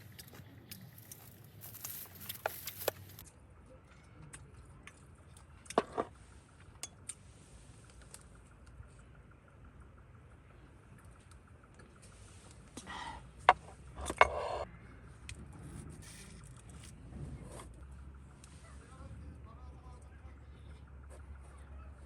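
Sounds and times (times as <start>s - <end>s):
small objects clicking and knocking: 0.0s - 3.3s
low background rumble: 0.0s - 22.0s.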